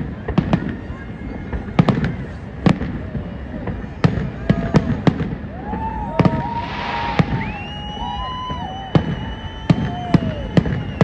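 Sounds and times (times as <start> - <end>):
continuous rumble: 0.0 - 6.2
firework whistles: 3.6 - 11.0
firework shells bursting: 6.4 - 11.0.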